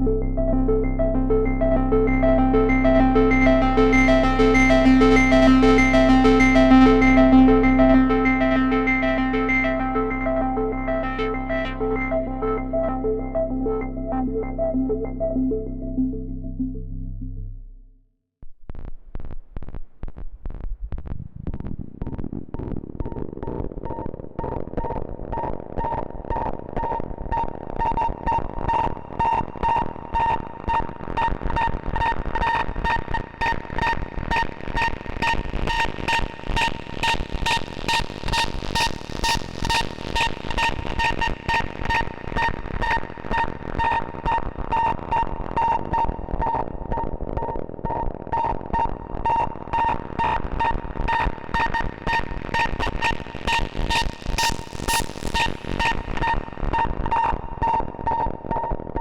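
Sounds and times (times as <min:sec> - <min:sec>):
repeating high synth note: 0:00.0 - 0:16.8
pulsing synthesizer sequence: 0:00.0 - 0:17.8
low bass drone: 0:00.0 - 0:18.0.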